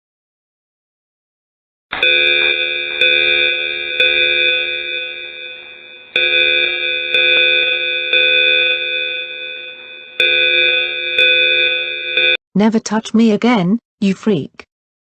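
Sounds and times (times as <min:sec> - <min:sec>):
cartoon fire alarm bell ringing: 0:02.0 - 0:12.4.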